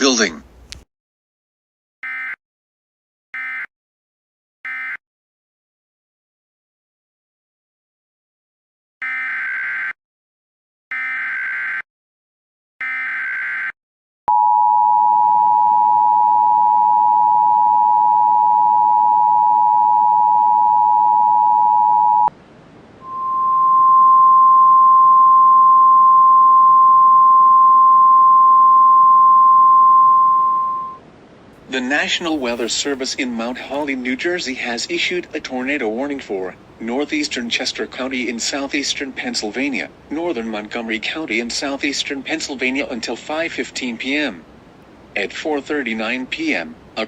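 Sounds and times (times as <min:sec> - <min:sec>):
two-tone attention signal: 0:23.0 - 0:27.5.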